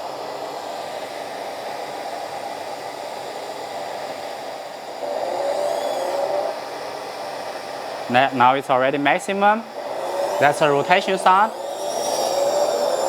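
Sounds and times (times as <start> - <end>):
cooling fan air noise: 0.0 - 13.0
simulated diesel engine through speaker: 8.0 - 13.0.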